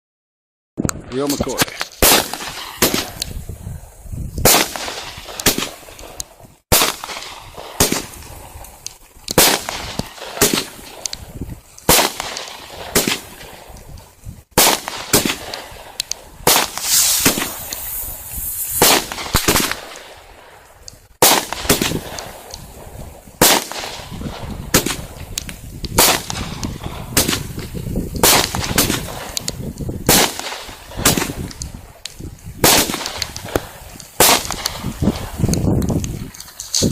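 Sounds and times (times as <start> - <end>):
fireworks cake bangs: 1.5 - 3.5, 4.4 - 8.5, 9.3 - 11.2, 11.8 - 13.8, 14.5 - 20.2, 21.2 - 31.7, 32.6 - 36.2
fireworks hissing: 14.2 - 20.3.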